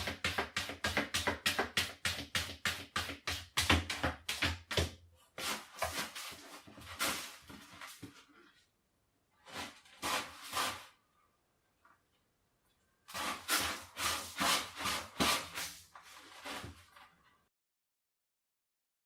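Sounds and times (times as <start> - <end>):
cat paws scraping litter: 5.3 - 8.5, 9.4 - 11.0, 13.1 - 17.2.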